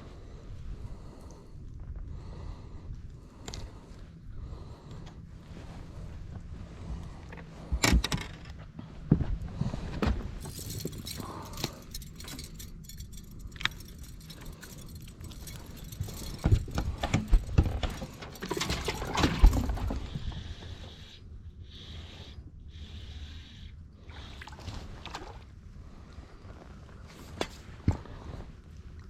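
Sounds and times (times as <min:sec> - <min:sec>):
light metallic jingle: 0:10.4 - 0:19.6.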